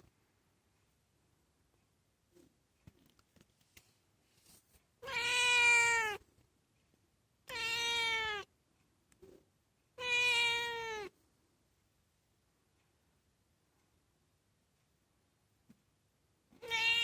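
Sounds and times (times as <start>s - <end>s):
cat meowing: 5.0s - 6.2s, 7.5s - 8.5s, 10.0s - 11.1s, 16.6s - 17.0s.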